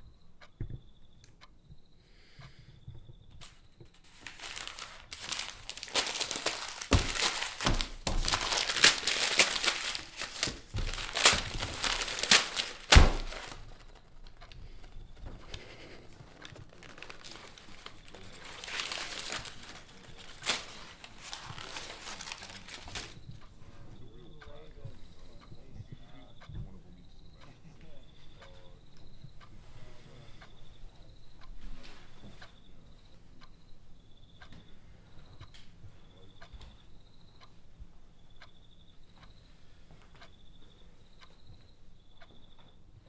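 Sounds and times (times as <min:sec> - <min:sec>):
paper tearing and crumpling: 0:04.1 - 0:14.5, 0:15.5 - 0:23.2
dull thumps: 0:04.1 - 0:23.2.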